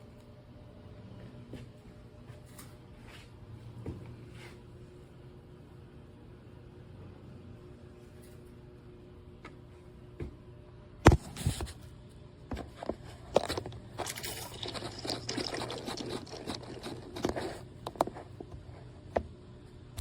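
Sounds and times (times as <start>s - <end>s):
espresso machine hum: 13.3s - 18.3s
liquid pouring and splashing: 13.9s - 17.6s.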